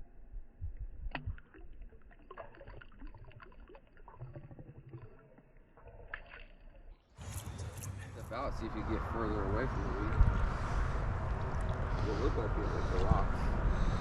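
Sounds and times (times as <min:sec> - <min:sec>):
river water sloshing and splashing: 0:01.1 - 0:04.4, 0:10.1 - 0:12.8
low microphone rumble: 0:07.2 - 0:14.0.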